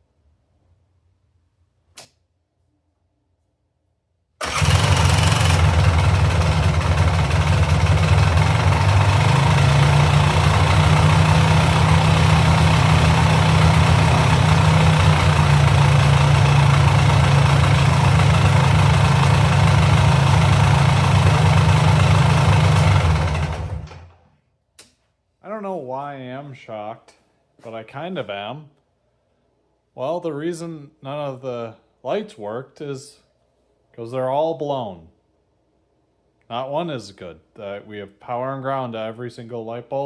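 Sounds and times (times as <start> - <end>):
two-stroke engine running: 4.4 - 24.2.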